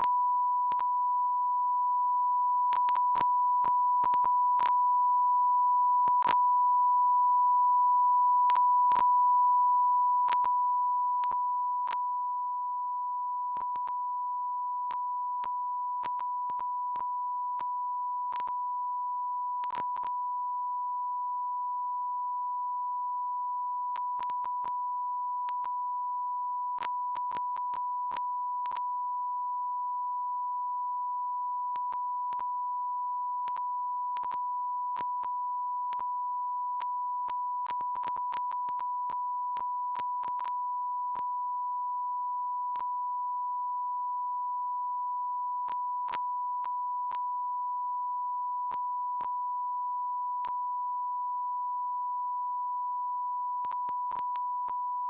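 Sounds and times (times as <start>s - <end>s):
continuous electronic beep: 0.0s - 55.0s
faint clicks: 53.6s - 54.8s.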